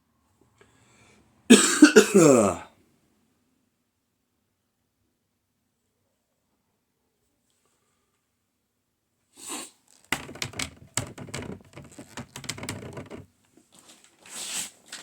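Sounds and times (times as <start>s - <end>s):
plastic cases clacking: 10.0s - 13.3s
plastic cases rustling: 10.0s - 15.0s.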